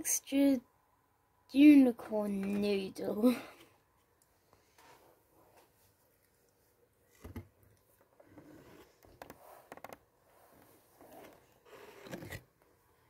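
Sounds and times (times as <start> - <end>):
fidget toy rustles and scrapes: 8.2 - 12.6.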